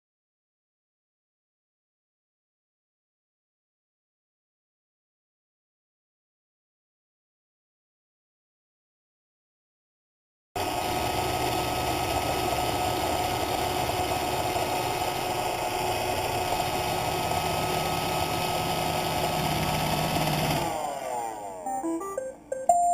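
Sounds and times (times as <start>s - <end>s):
robot vacuum running: 10.6s - 22.5s.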